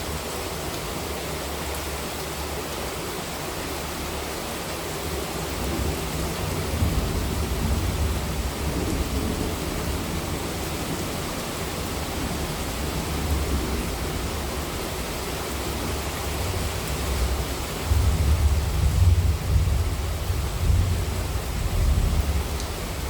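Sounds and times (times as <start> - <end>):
heavy rain hissing: 0.0 - 23.0.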